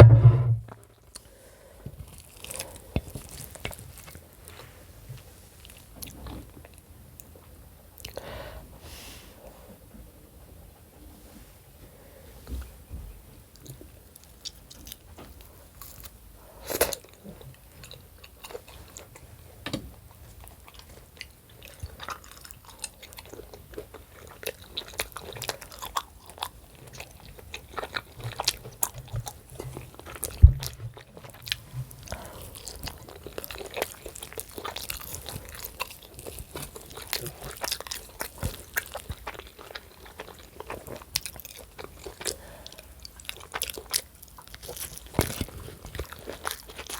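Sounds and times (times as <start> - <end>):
sharp knock: 0.0 - 0.7
person chewing food: 2.0 - 8.2, 13.5 - 46.9.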